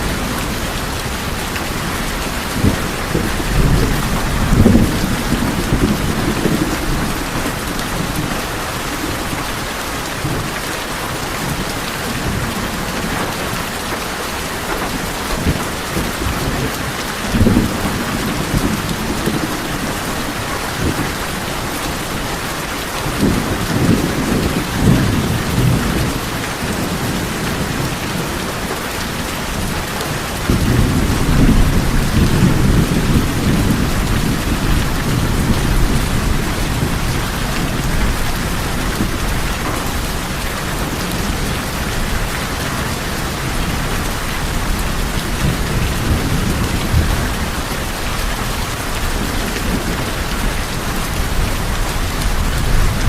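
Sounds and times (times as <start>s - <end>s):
thunder rolling: 0.0s - 9.3s, 14.8s - 21.4s, 30.1s - 53.0s
rain on tin roofs: 0.0s - 53.0s.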